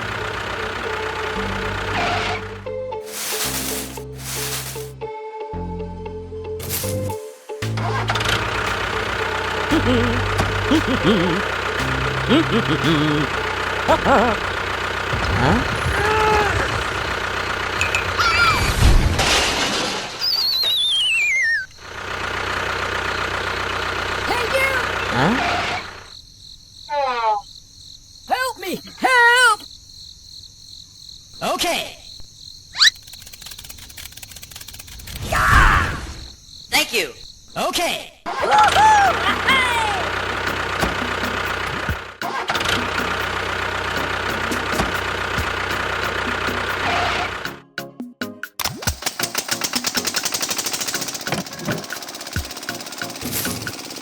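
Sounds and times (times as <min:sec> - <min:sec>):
engine hum: 0:00.0 - 0:05.1, 0:05.9 - 0:20.2, 0:21.0 - 0:26.3, 0:32.8 - 0:36.4, 0:38.5 - 0:47.6, 0:48.7 - 0:54.0
falling slide whistle: 0:20.2 - 0:21.7.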